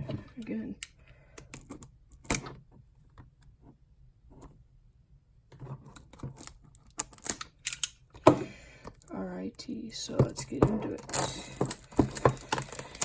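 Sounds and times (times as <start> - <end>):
packaging clicks and taps: 10.2 - 13.0
packaging crinkling and rustling: 11.0 - 13.0.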